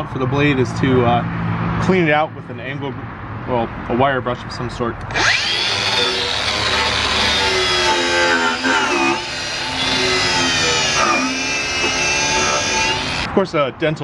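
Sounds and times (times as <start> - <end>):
power tool motor whining: 5.1 - 13.3.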